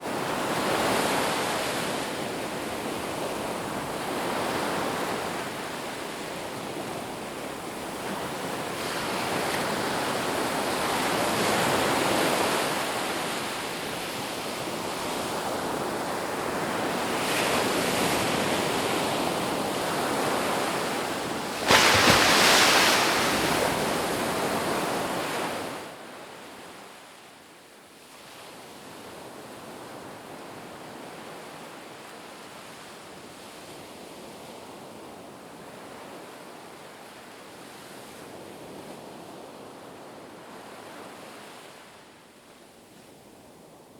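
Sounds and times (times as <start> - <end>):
waves rushing: 19.8 - 26.0.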